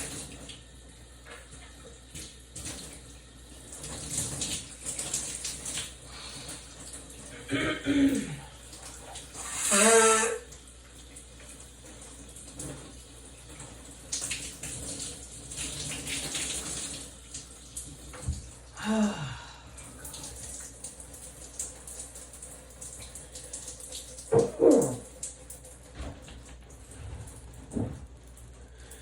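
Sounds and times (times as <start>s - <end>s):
shower water running: 0.0s - 29.0s
person sneezing: 7.4s - 8.5s, 9.5s - 10.4s.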